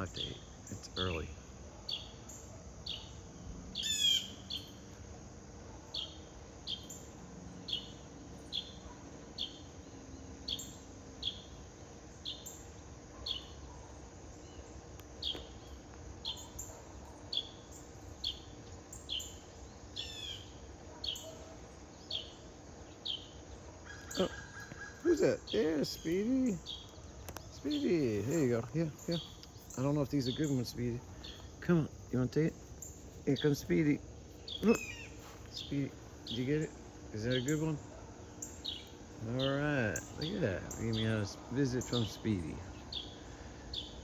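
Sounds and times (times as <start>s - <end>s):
songbird whistled calls: 3.8s - 4.8s, 20.0s - 22.4s, 34.4s - 36.4s.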